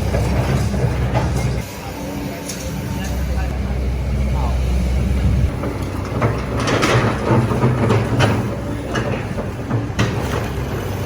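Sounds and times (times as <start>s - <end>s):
diesel engine running: 0.0s - 11.0s.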